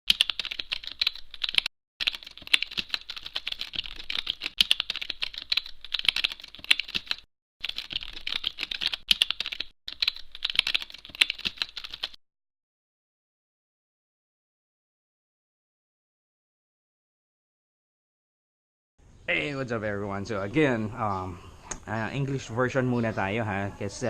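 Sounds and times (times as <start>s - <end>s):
keyboard typing clicks: 0.1s - 12.2s.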